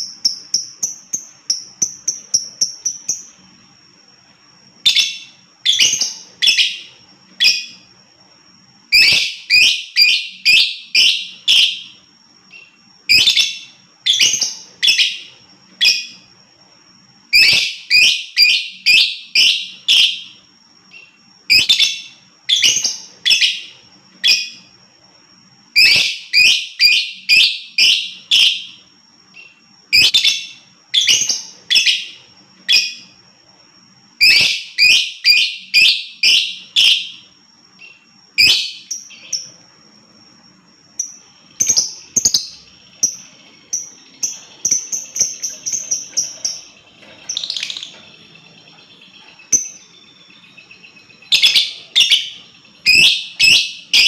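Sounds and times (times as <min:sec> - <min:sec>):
thin steady high tone: 0:00.0 - 0:54.0
bird shrill chirping: 0:04.8 - 0:08.0, 0:08.8 - 0:16.4, 0:17.2 - 0:24.7, 0:25.7 - 0:33.2, 0:34.1 - 0:39.7, 0:40.9 - 0:54.0
faint chirring: 0:35.6 - 0:54.0.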